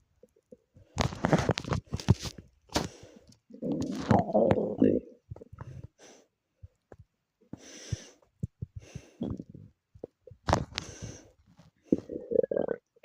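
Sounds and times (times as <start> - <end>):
stomach gurgling clicks: 0.0 - 6.0, 6.6 - 13.0
breathing: 2.8 - 3.4, 5.6 - 6.4, 7.5 - 9.3, 10.7 - 12.1.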